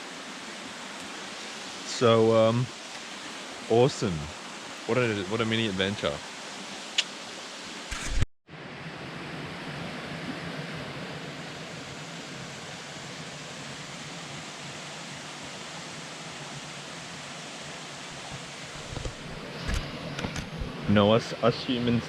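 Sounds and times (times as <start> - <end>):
water rushing over waterfall: 0.0 - 8.0.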